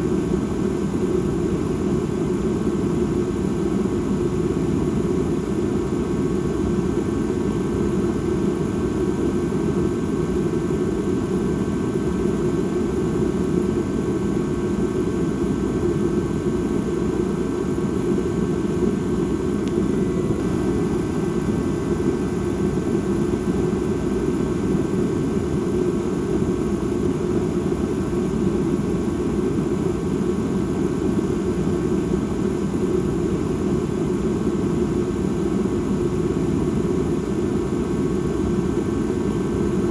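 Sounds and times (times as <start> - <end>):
low rumbling ambient drone: 15.8 - 28.4.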